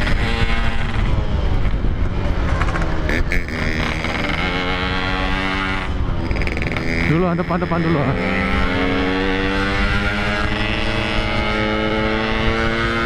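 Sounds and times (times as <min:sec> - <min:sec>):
motorcycle engine revving: 0:00.0 - 0:13.0
wind rumbling on microphone: 0:00.0 - 0:13.0.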